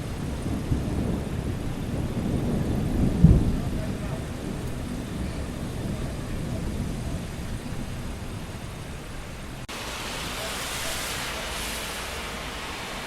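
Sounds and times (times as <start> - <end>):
thunder rumbling: 0.0 - 12.8
city traffic: 0.0 - 13.0
steady rain: 0.0 - 13.0.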